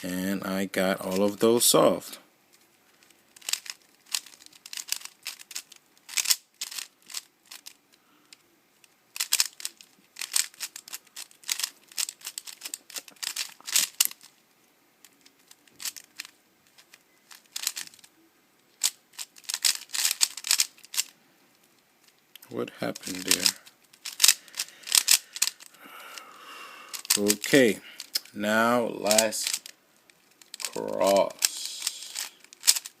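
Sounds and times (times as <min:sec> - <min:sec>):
puzzle cube clicking: 0:03.4 - 0:08.4, 0:09.2 - 0:14.3, 0:15.0 - 0:18.1, 0:18.7 - 0:21.1, 0:22.4 - 0:26.3, 0:26.9 - 0:28.4, 0:29.0 - 0:33.0.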